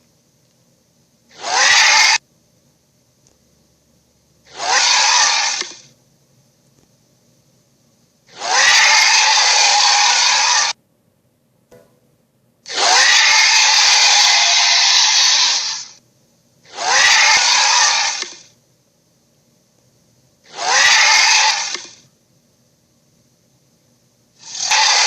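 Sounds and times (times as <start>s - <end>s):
toy playing dragon roars: 1.3s - 2.2s, 4.5s - 5.8s, 8.3s - 10.8s, 12.7s - 16.0s, 16.7s - 18.4s, 20.5s - 22.0s, 24.4s - 25.0s.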